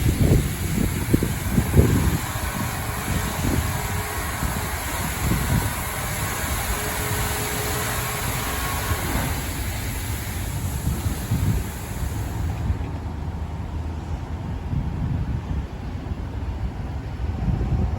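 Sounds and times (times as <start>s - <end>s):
car wash spray hissing: 0.0s - 13.0s
machinery rumble: 0.0s - 14.8s.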